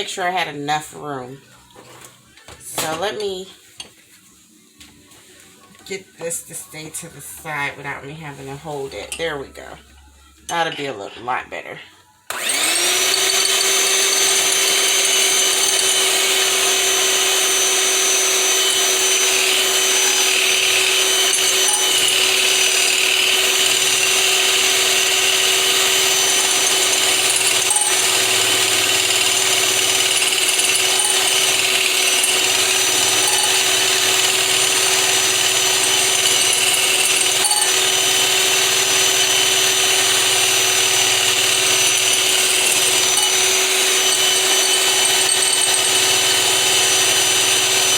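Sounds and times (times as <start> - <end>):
electric blender motor running: 12.3 - 47.9.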